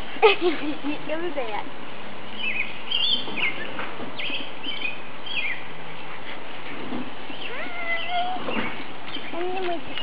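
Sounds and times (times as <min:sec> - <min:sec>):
outdoor background hiss: 0:00.0 - 0:10.0
small songbirds chirping: 0:02.3 - 0:06.5, 0:07.2 - 0:10.0
low rising bird call: 0:07.3 - 0:09.4.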